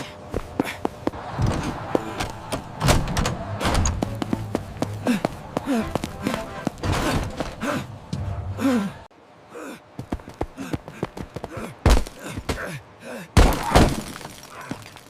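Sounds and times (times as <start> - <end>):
sighs and groans: 4.8 - 13.4.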